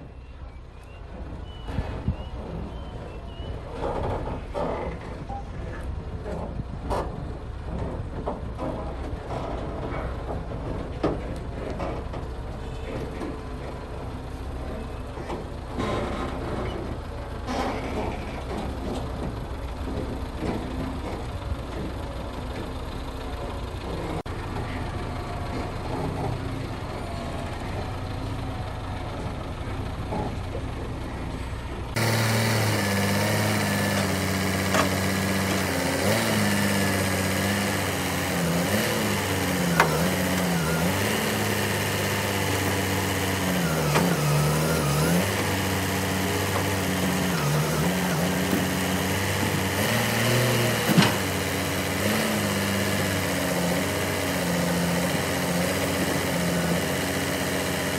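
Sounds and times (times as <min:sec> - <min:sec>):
heavy machinery humming: 0:00.0 - 0:57.9
loud engine running: 0:00.0 - 0:57.9
knocks and clatters: 0:03.7 - 0:14.1, 0:15.2 - 0:24.7, 0:29.2 - 0:52.2.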